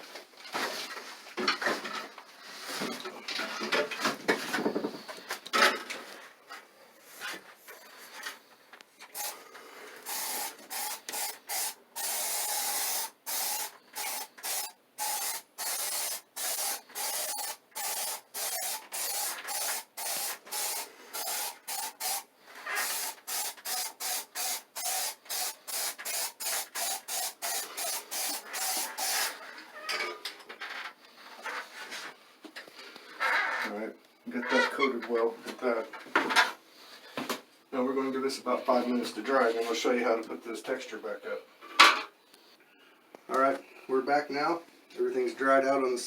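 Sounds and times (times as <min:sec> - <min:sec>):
aerosol can spraying: 0:09.1 - 0:09.4, 0:10.0 - 0:29.4.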